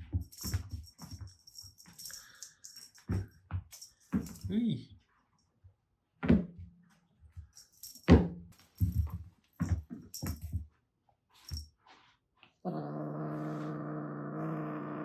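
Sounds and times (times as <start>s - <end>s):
jingling toy: 0.0s - 4.7s, 7.4s - 10.6s, 11.4s - 11.7s.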